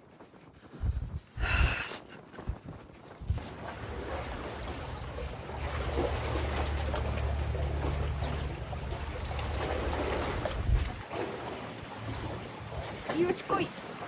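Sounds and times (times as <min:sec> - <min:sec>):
sea water sloshing: 0:02.4 - 0:14.0
boat engine drone: 0:03.3 - 0:14.0.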